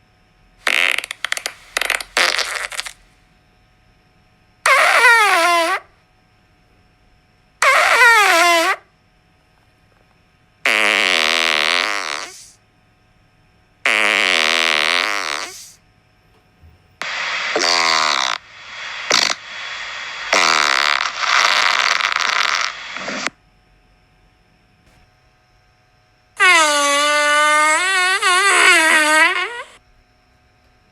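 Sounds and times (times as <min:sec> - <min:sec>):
fart sounds: 0:00.6 - 0:03.0, 0:04.6 - 0:05.9, 0:07.6 - 0:08.8, 0:10.6 - 0:12.6, 0:13.8 - 0:15.8, 0:17.0 - 0:23.4, 0:26.4 - 0:29.8.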